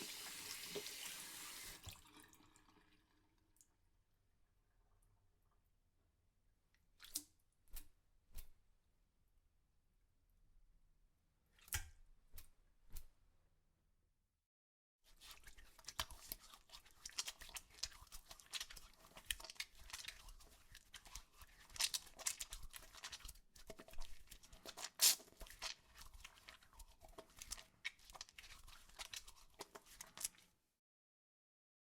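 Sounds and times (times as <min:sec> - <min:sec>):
hands rubbing and crackling: 0:17.0 - 0:30.4.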